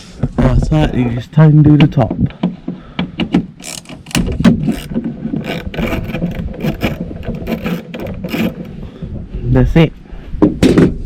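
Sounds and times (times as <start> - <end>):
ratchet clicking: 3.6 - 8.7
metal parts scraping: 3.6 - 8.8.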